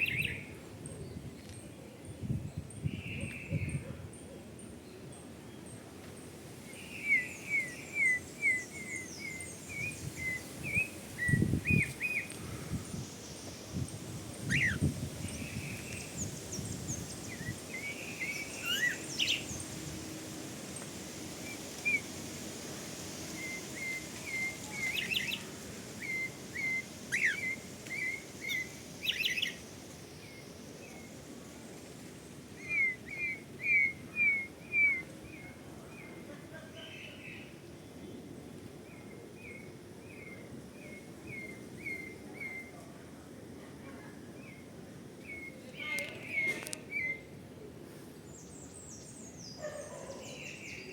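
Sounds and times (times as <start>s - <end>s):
songbird singing: 0.0s - 50.9s
higher bird calls: 14.4s - 19.9s, 23.2s - 30.4s, 32.6s - 35.6s, 45.2s - 47.3s.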